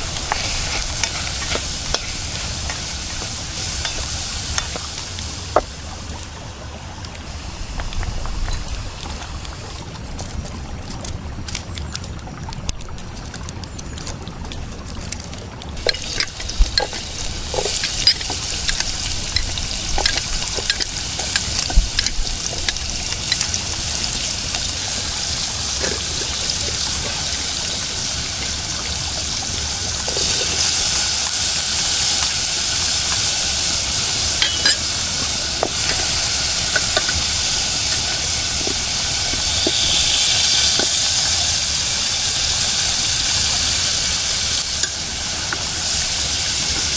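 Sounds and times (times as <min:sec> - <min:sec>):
food sizzling in a pan: 0:00.0 - 0:10.0, 0:15.7 - 0:46.9
popping and ticking: 0:15.2 - 0:28.6, 0:32.1 - 0:41.6.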